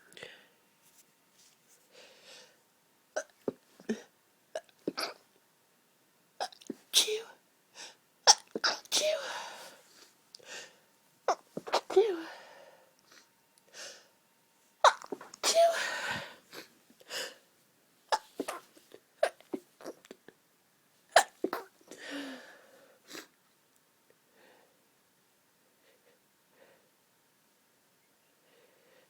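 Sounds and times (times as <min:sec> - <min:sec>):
person sneezing: 0:06.7 - 0:07.4, 0:08.3 - 0:09.7, 0:11.3 - 0:12.4, 0:14.8 - 0:16.7, 0:18.1 - 0:19.6, 0:21.2 - 0:22.5.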